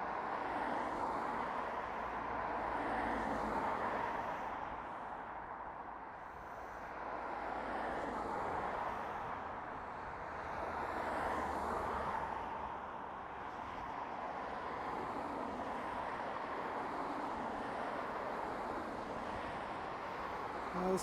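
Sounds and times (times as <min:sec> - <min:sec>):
road traffic passing: 0:10.5 - 0:21.0.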